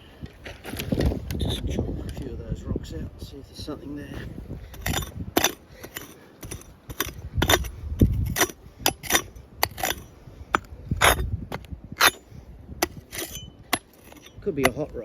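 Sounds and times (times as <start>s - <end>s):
stones clinking on rocky ground: 4.7s - 15.0s.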